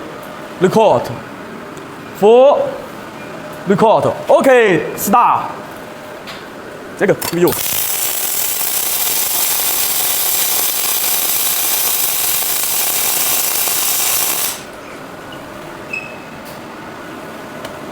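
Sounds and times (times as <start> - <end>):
steady background hum: 0.0 - 17.9
loud steady hissing: 7.2 - 14.8.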